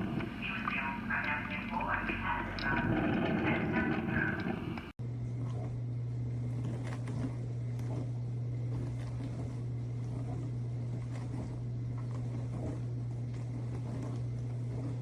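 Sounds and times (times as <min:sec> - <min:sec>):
faint clicks: 0:00.0 - 0:04.9
low motor hum: 0:00.0 - 0:15.0.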